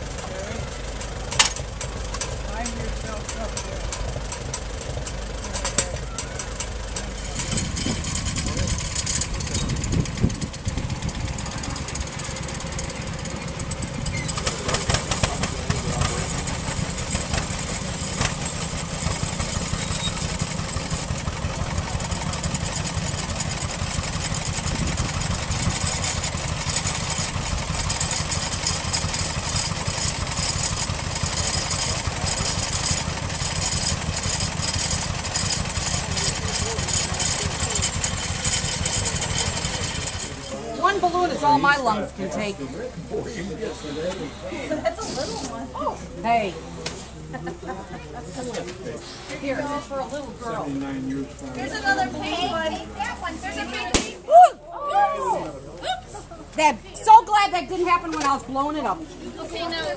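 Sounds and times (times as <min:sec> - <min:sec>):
engine idling: 0:00.0 - 0:54.3
faint voices: 0:05.0 - 0:18.0, 0:35.6 - 0:59.9.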